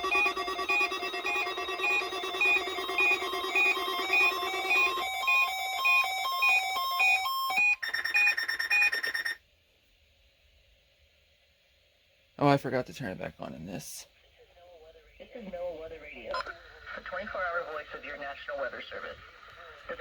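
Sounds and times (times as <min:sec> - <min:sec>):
overlapping electronic beeping: 0:00.0 - 0:09.4
steady electronic alert tone: 0:00.0 - 0:09.4.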